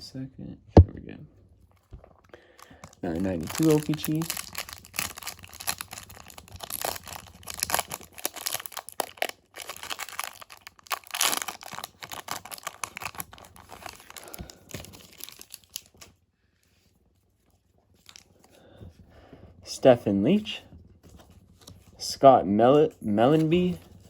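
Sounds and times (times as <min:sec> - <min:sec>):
wrapper torn and crumpled: 0:02.6 - 0:16.2, 0:18.0 - 0:18.3.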